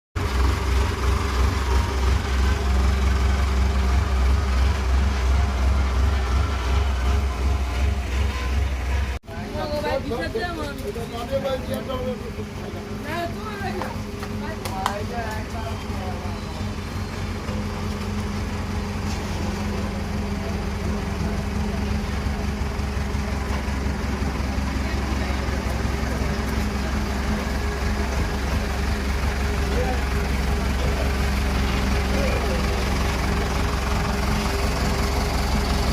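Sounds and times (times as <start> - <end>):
heavy machine engine rumbling: 0.2 - 35.9.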